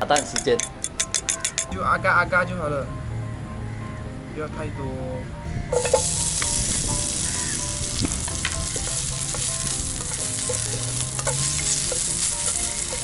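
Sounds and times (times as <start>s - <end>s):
food sizzling in hot oil: 5.7s - 13.0s.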